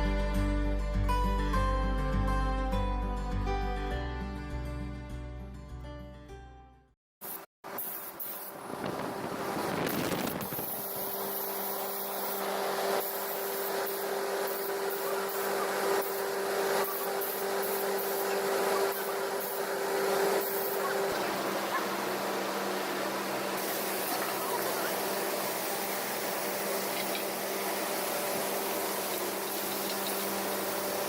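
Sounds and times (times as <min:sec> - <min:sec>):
machinery hiss: 0:07.2 - 0:31.0.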